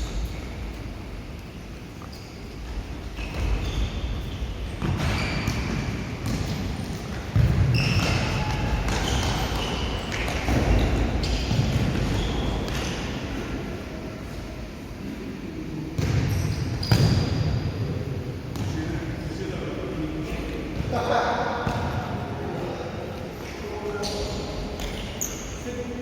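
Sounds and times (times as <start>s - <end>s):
shoes squeaking on court: 1.8s - 13.3s, 16.0s - 17.6s, 23.9s - 25.7s.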